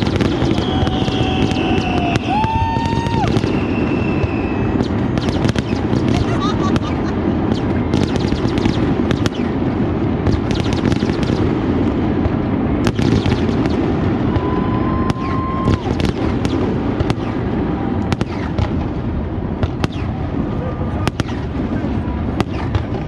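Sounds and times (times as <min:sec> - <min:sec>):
fireworks booming: 0:00.0 - 0:23.0
fireworks cracking and banging: 0:00.0 - 0:23.0
whistle-like tone: 0:00.3 - 0:02.4, 0:03.3 - 0:05.4.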